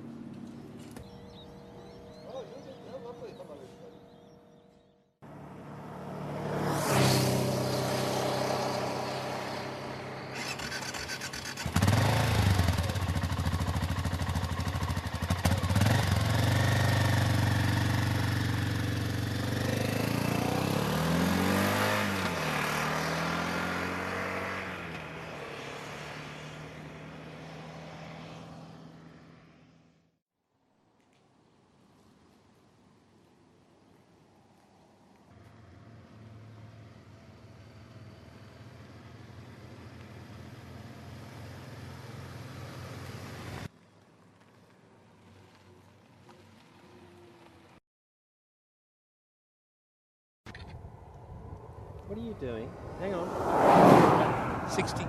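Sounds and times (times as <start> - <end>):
motorcycle engine pulling away: 4.1 - 29.7, 35.3 - 47.8.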